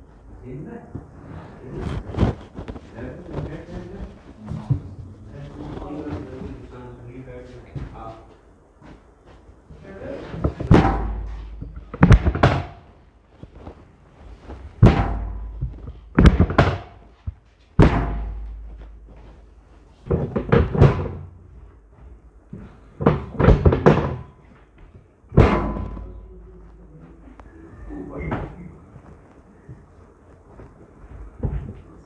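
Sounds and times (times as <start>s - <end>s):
heavy thumps on treatment table: 10.4s - 12.9s, 14.8s - 21.7s, 22.5s - 24.4s, 25.3s - 26.3s.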